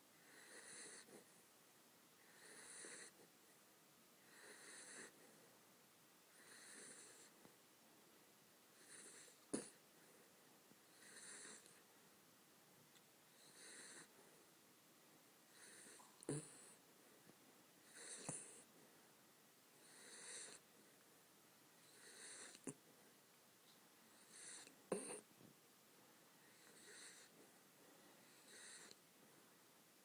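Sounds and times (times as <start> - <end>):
puppy snoring wheezily: 0.2 - 1.3, 2.2 - 3.3, 4.2 - 5.2, 6.3 - 7.4, 8.8 - 9.8, 10.9 - 11.8, 13.3 - 14.2, 15.5 - 16.8, 17.8 - 18.7, 19.8 - 20.6, 21.8 - 22.8, 24.1 - 25.3, 26.5 - 27.4, 28.2 - 29.0.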